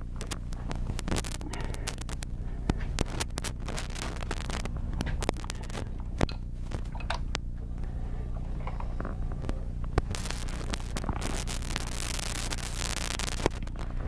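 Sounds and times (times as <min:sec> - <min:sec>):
microphone crackling and clicking: 0:00.0 - 0:14.0.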